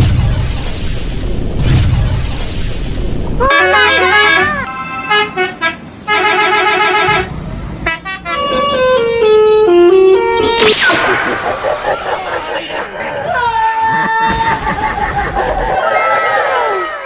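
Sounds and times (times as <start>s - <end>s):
musical bus horn tune: 3.4s - 10.6s.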